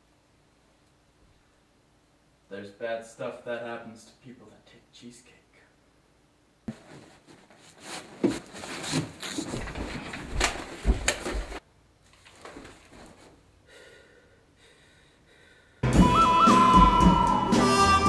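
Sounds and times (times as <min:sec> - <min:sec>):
knocks thumps and scuffling: 0:06.7 - 0:11.6.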